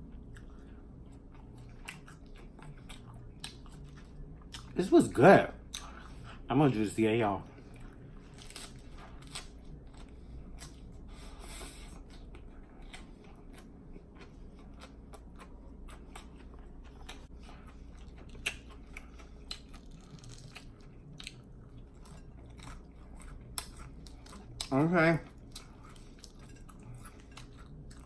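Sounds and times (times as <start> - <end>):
open-mouth chewing with lip smacking: 0.2 - 4.8, 12.0 - 24.7.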